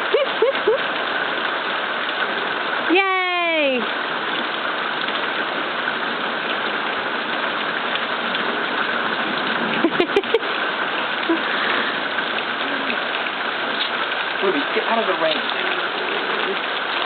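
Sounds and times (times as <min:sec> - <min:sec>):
rain pattering on surfaces: 0:00.0 - 0:17.0.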